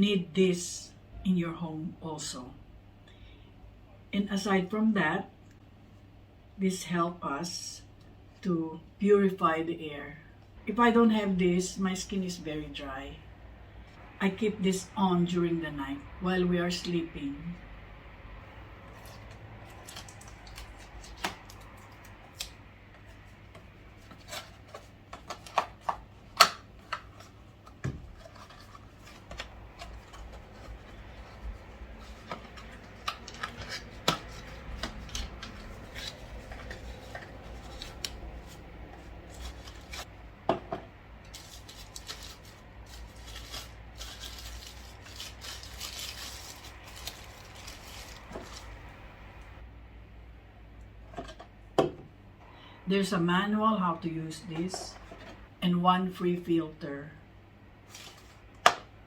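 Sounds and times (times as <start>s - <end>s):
packaging rustling: 18.9s - 40.1s, 41.2s - 49.2s, 57.8s - 58.6s.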